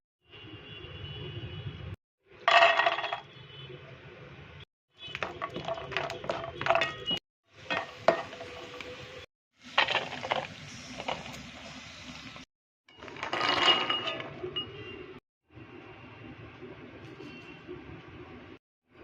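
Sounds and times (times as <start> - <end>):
nuts rustling in a pan: 9.6 - 11.6.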